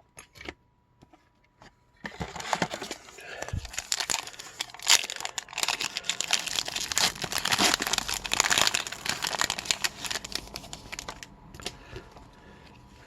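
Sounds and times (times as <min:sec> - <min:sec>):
plastic wrapper crinkling: 0:02.1 - 0:11.7.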